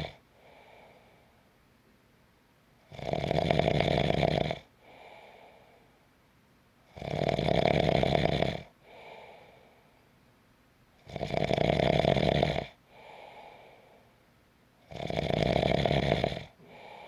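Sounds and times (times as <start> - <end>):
person snoring: 0.0 - 0.2, 2.9 - 5.0, 7.0 - 9.1, 11.1 - 13.6, 14.9 - 17.0
soft breath: 0.0 - 1.5, 4.8 - 6.1, 8.8 - 10.2, 12.8 - 14.3, 16.5 - 17.0.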